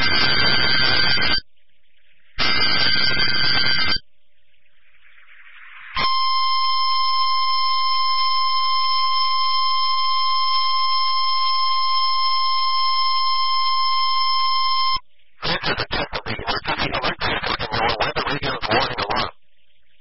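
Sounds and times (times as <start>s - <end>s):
steady alarm tone: 2.4s - 4.0s, 6.0s - 15.0s
synthesized voice speaking: 15.4s - 19.3s.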